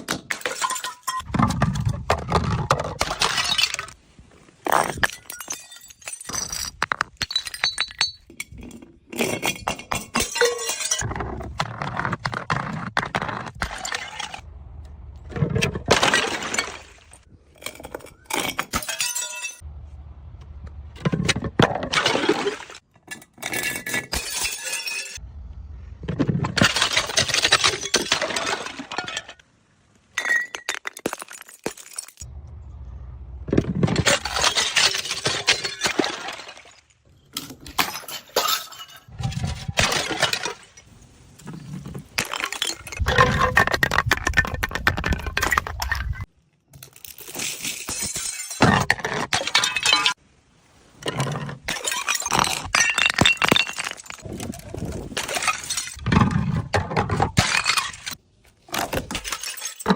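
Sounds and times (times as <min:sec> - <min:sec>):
glass bottles smashing: 0:00.1 - 0:04.0, 0:04.6 - 0:11.1, 0:15.8 - 0:19.6, 0:21.0 - 0:25.2, 0:26.5 - 0:29.4, 0:30.2 - 0:32.3, 0:33.7 - 0:41.0, 0:41.7 - 0:50.2, 0:51.6 - 0:59.9.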